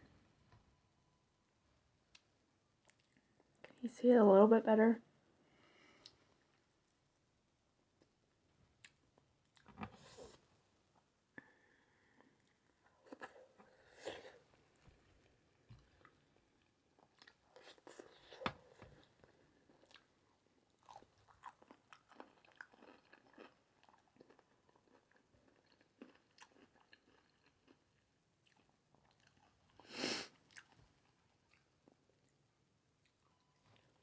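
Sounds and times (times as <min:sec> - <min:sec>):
person chewing and crunching food: 0:02.8 - 0:03.5, 0:12.1 - 0:32.4.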